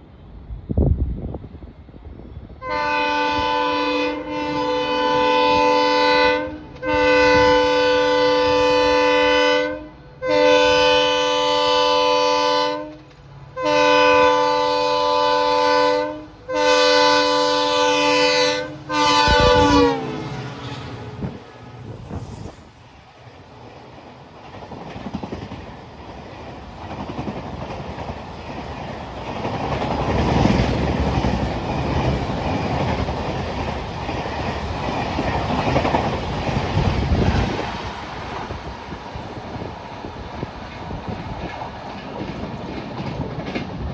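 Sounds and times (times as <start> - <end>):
passing locomotive rumble: 0.0 - 43.9
locomotive horn blasts: 2.6 - 13.0, 13.6 - 21.4.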